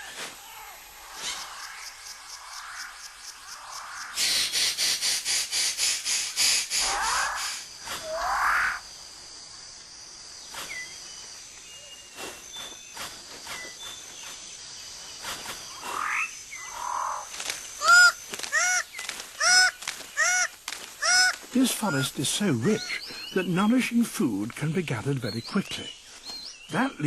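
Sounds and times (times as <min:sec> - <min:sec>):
scattered chirps and rising calls: 0:01.0 - 0:04.7, 0:06.2 - 0:08.9, 0:10.4 - 0:23.7.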